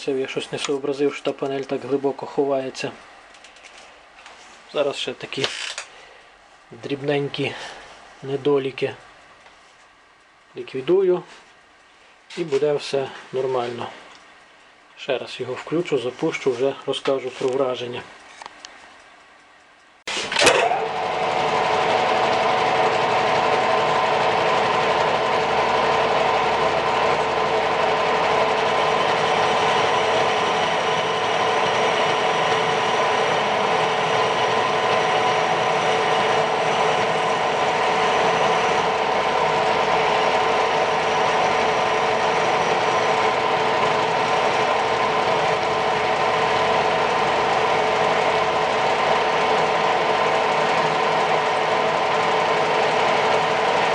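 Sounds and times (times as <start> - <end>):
drill press motor whirring: 20.1 - 53.9.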